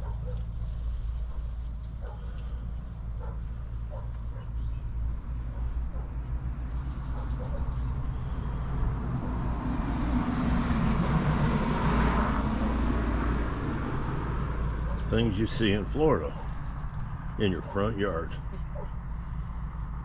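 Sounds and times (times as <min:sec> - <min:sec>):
road vehicle passing: 0:00.0 - 0:20.0
steady low rumble: 0:00.0 - 0:20.0.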